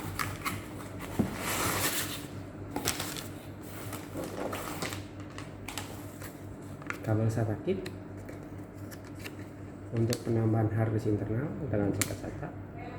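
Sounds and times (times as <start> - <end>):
packaging rustle: 1.4 - 6.0.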